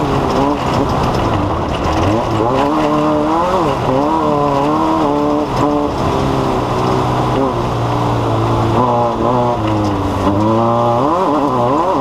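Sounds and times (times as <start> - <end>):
steady rush of noise: 0.0 - 12.0
engine revving hard: 1.8 - 12.0.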